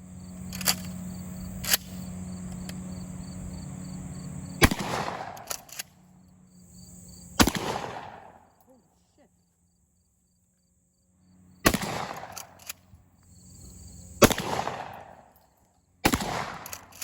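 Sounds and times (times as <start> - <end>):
shotgun shots with echo: 4.6 - 5.5, 7.4 - 8.4, 11.7 - 12.4, 14.2 - 15.2, 16.0 - 16.7.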